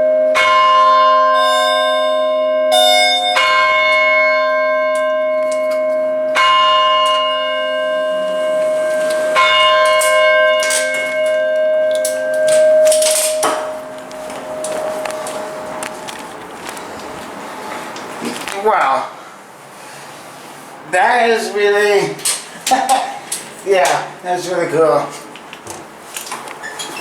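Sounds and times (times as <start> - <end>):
tower bells ringing: 0.0 - 17.8.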